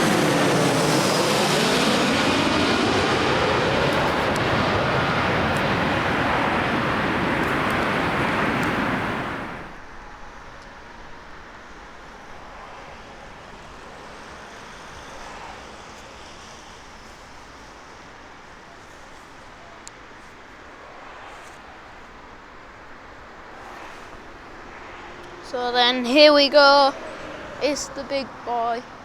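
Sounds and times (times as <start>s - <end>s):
jet engine roar: 0.0s - 29.0s
steady jet hiss: 3.1s - 9.8s.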